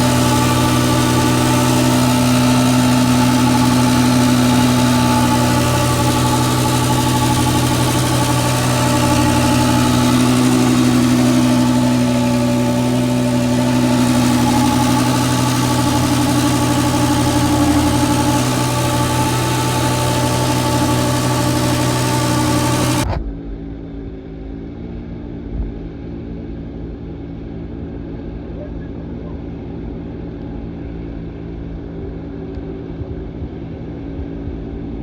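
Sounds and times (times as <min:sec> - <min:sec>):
farm vehicle engine running: 0:00.0 - 0:23.1.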